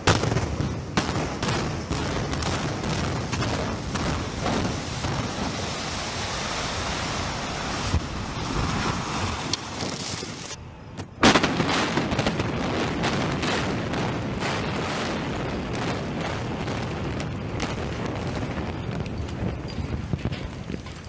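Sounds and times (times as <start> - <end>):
loud blast: 11.0 - 16.9.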